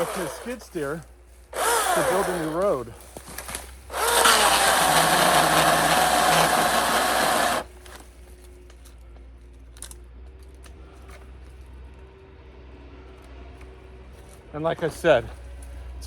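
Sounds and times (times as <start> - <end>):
electric chainsaw revving: 0.0 - 0.8, 1.6 - 2.8, 3.9 - 7.8.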